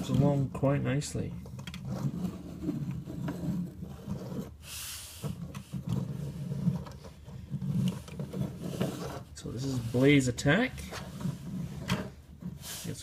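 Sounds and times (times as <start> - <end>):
plastic wheels rolling on table: 1.4 - 4.6, 5.2 - 10.1, 10.8 - 12.7.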